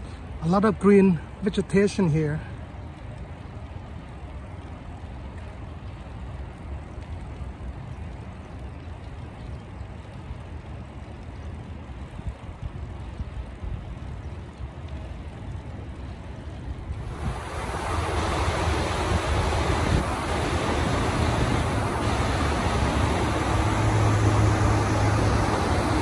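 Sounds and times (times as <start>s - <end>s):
wind rushing over microphone: 16.8s - 26.0s.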